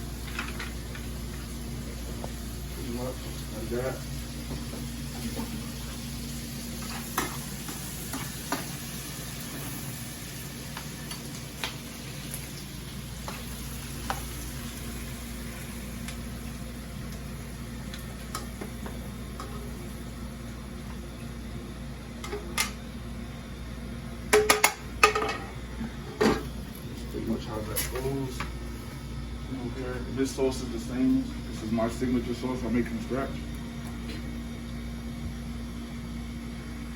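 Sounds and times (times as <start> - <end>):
food sizzling in a pan: 1.1 - 20.0.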